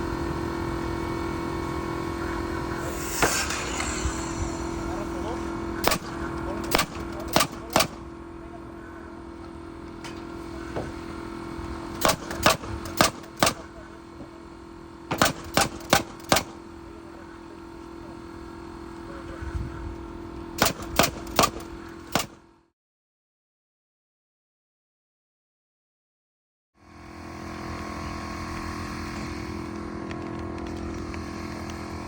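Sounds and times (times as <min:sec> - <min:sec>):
steady hum: 0:00.0 - 0:22.6
nails hammered into wood: 0:05.8 - 0:06.1, 0:06.7 - 0:08.1, 0:12.0 - 0:13.7, 0:15.1 - 0:16.6, 0:20.6 - 0:22.4.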